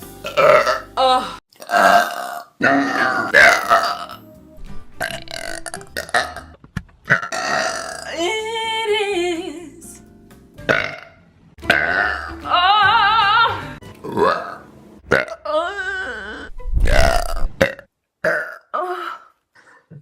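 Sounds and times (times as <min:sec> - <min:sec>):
woman belching: 0:00.2 - 0:04.2, 0:05.0 - 0:06.5, 0:07.1 - 0:08.2, 0:10.7 - 0:11.1, 0:11.7 - 0:12.5, 0:14.0 - 0:18.8.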